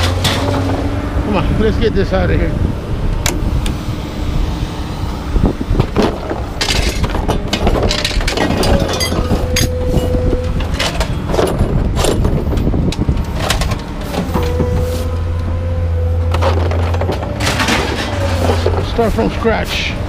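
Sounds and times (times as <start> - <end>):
engine rumble: 0.0 - 20.0
steady whine: 0.0 - 20.0
scrap metal clanking: 5.9 - 12.5, 16.1 - 19.9.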